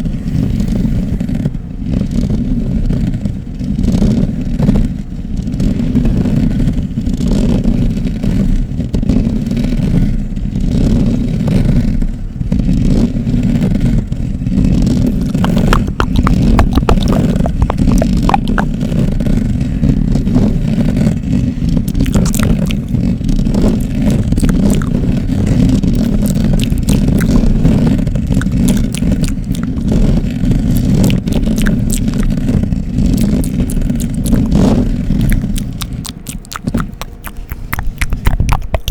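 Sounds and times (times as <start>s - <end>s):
scratching on microphone: 12.7s - 38.9s.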